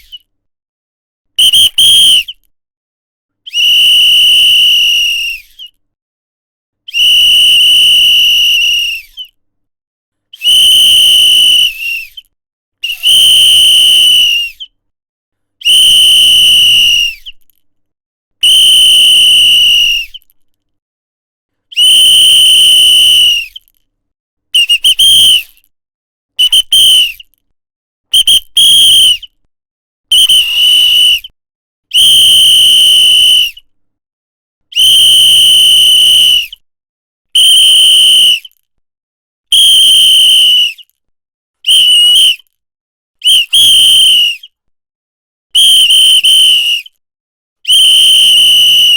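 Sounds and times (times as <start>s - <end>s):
whistle blasts: 1.4s - 2.4s, 3.5s - 5.6s, 6.9s - 9.3s, 10.4s - 14.6s, 15.6s - 17.4s, 18.4s - 20.3s, 21.7s - 23.6s, 24.6s - 25.6s, 26.4s - 27.2s, 28.1s - 29.3s, 30.1s - 31.3s, 31.9s - 33.6s, 34.7s - 36.6s, 37.4s - 38.6s, 39.5s - 40.8s, 41.7s - 42.4s, 43.2s - 44.5s, 45.6s - 47.0s, 47.7s - 48.9s.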